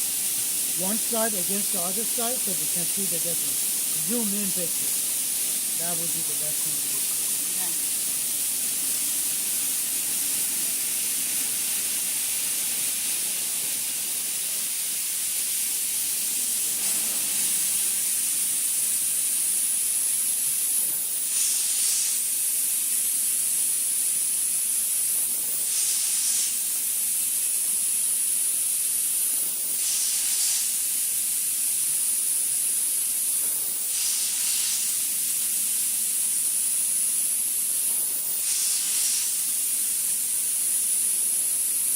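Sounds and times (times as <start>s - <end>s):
high-pitched spray jet hiss: 0.0s - 41.9s.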